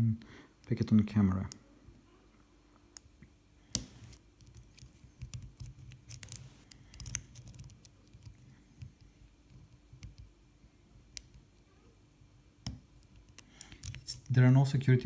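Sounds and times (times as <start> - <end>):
lock picks clicking and scraping: 3.7 - 10.2, 13.0 - 14.3.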